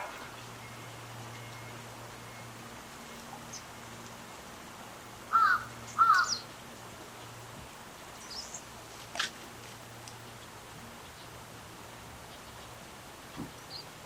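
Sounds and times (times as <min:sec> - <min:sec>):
small birds chirping: 0:00.0 - 0:04.2, 0:05.3 - 0:14.0
bird calling loudly: 0:05.3 - 0:06.5.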